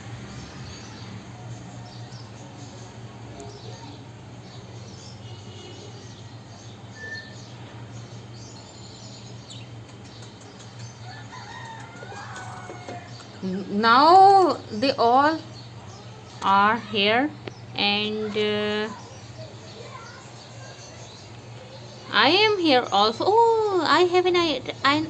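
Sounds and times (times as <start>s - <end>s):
faint bird chirps: 0.4s - 13.8s.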